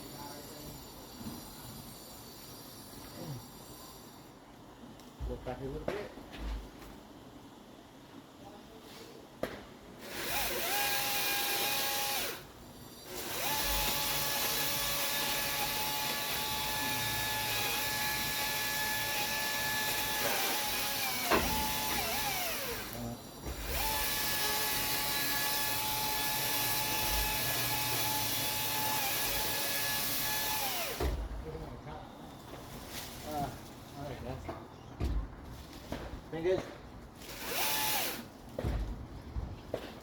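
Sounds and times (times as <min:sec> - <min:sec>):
power tool motor whining: 0:10.0 - 0:31.2, 0:37.2 - 0:38.3.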